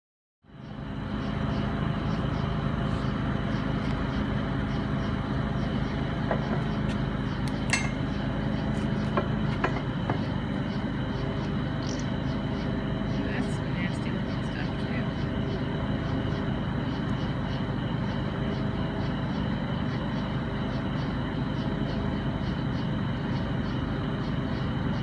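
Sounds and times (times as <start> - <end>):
motor running: 0.6 - 25.0
sharp metallic clinks: 7.4 - 8.2.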